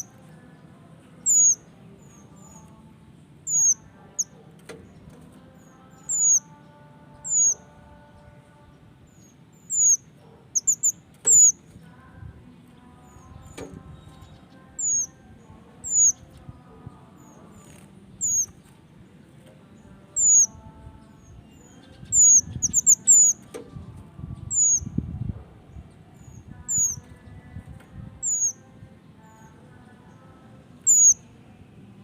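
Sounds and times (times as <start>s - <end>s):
bird calling high-pitched notes: 1.3s - 1.6s, 3.5s - 3.8s, 20.2s - 20.5s, 24.5s - 24.9s, 30.9s - 31.2s.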